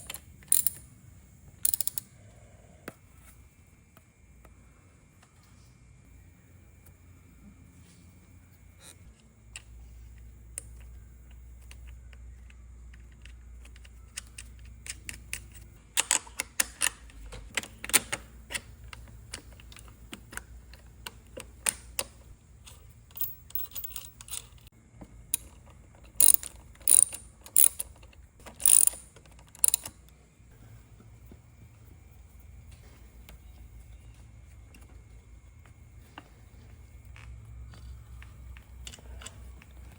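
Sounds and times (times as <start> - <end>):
hand tools clicking on metal: 0.0 - 0.9, 1.6 - 2.1, 11.6 - 24.7, 25.3 - 30.2.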